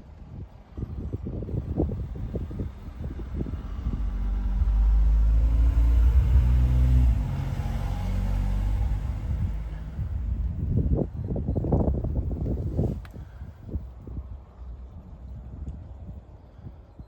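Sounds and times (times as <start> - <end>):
vehicle engine running: 0.8 - 13.8.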